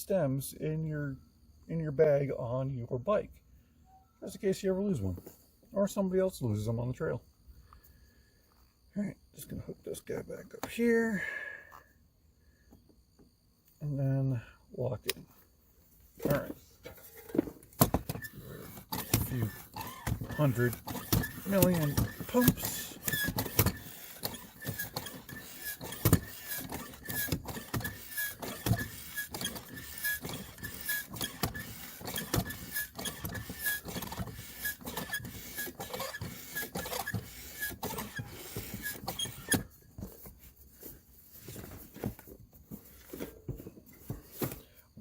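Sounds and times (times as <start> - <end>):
faint pump squeak: 3.8 - 5.2, 16.2 - 45.0
bicycle pump strokes: 16.2 - 40.2.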